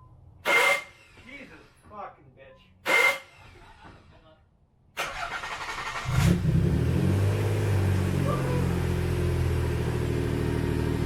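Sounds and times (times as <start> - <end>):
car engine cranking and starting: 4.9 - 11.0
car engine idling: 7.3 - 11.0.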